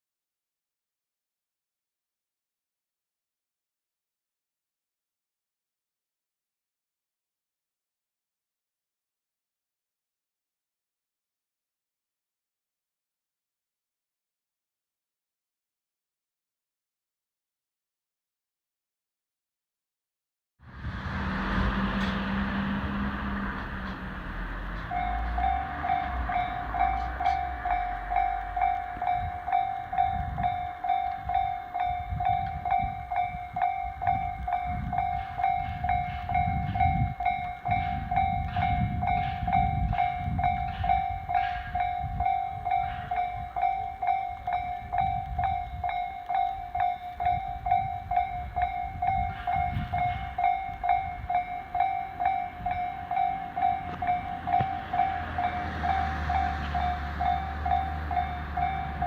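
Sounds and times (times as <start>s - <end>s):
train rumble and wheel clicks: 20.7s - 59.0s
level crossing bell ringing: 24.8s - 59.0s.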